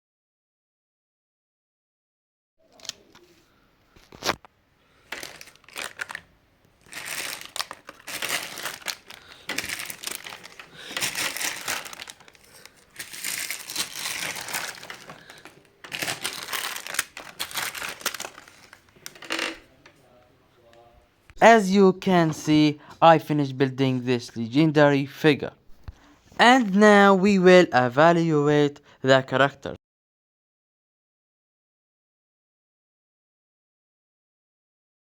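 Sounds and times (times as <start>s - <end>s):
plastic crinkling and rustling: 3.9s - 19.8s.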